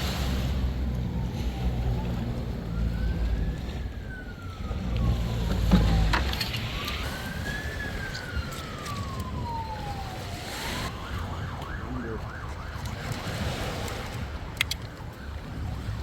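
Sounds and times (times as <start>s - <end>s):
siren wailing and yelping: 1.2s - 13.3s.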